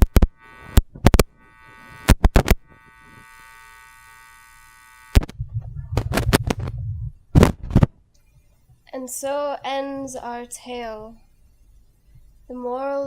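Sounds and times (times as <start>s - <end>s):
steady electric buzz: 0.0s - 8.0s
low rumble: 5.2s - 7.8s.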